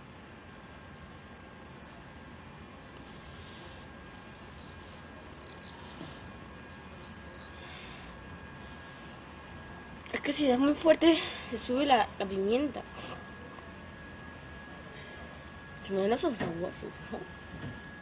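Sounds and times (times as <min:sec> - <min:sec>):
small bird chirping: 0:00.0 - 0:10.2.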